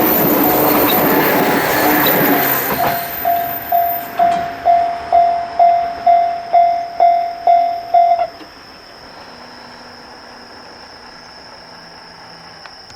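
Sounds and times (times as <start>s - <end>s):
level-crossing warning bell ringing: 0.0s - 8.4s
steady high whine: 0.0s - 12.9s.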